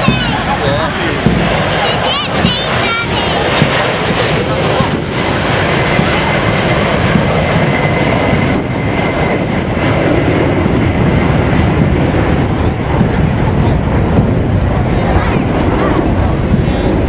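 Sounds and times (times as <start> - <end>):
jet engines roaring: 0.0 - 17.0.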